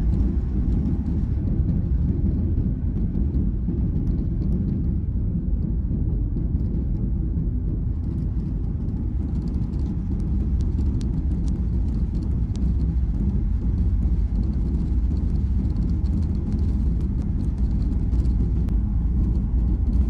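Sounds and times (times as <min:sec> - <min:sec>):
airliner cabin engine rumble: 0:00.0 - 0:20.0
faint ticks: 0:09.2 - 0:18.8.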